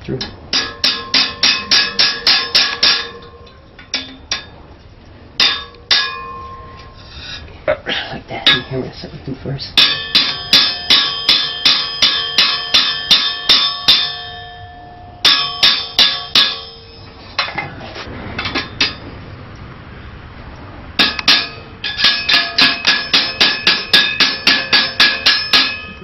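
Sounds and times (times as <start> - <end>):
hammer striking steel rivet: 0.5 - 4.5, 5.4 - 6.7, 9.8 - 17.6, 21.0 - 26.0.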